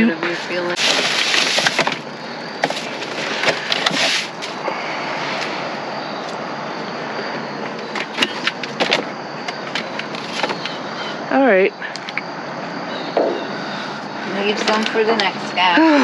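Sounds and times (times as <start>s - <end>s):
rustling: 0.3s - 4.6s
packages knocking: 0.8s - 4.4s, 7.8s - 10.8s
plastic crinkling: 0.8s - 4.6s.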